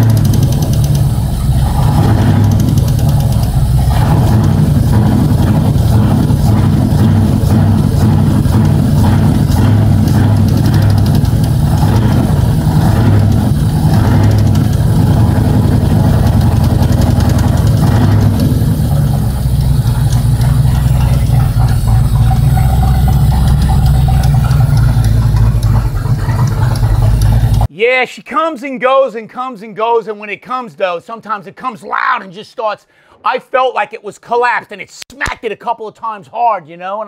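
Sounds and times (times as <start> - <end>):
car engine idling: 0.0 - 27.7
engine lifter knock: 0.0 - 27.7.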